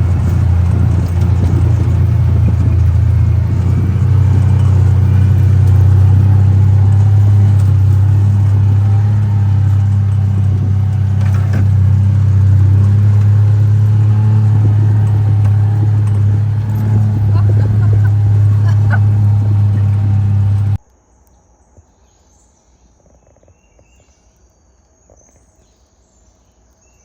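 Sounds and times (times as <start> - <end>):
utility vehicle engine running: 0.0 - 20.8.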